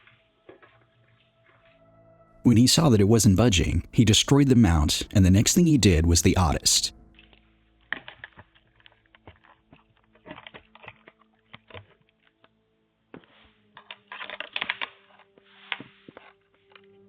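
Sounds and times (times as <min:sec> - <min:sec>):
faint steady hum: 0:02.4 - 0:07.1.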